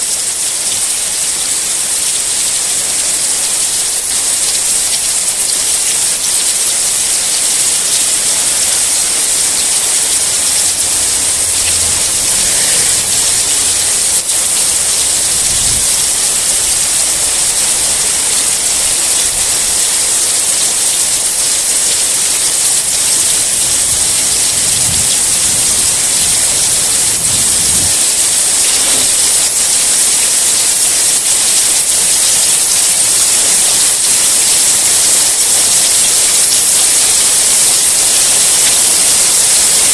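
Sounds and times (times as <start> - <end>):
heavy rain: 0.0 - 39.9
faint low rumbles: 10.4 - 14.2.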